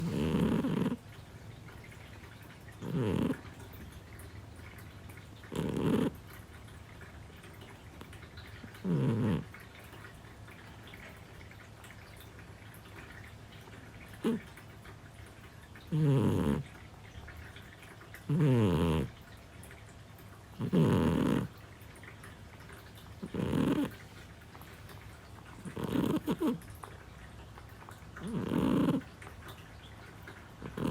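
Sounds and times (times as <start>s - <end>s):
cat snoring: 0.0s - 1.0s, 2.8s - 3.5s, 5.5s - 6.2s, 8.8s - 9.5s, 14.2s - 14.5s, 15.9s - 16.7s, 18.3s - 19.2s, 20.6s - 21.6s, 23.2s - 24.0s, 25.6s - 26.7s, 28.2s - 29.1s, 30.6s - 30.9s.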